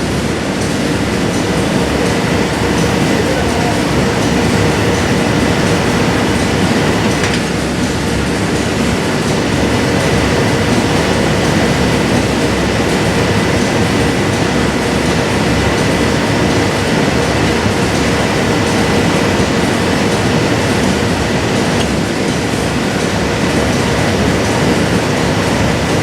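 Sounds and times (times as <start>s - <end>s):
industrial machinery rumbling: 0.0s - 26.0s
faint steady hum: 0.6s - 7.8s, 8.6s - 26.0s
faint high whine: 0.9s - 7.5s, 8.8s - 22.0s.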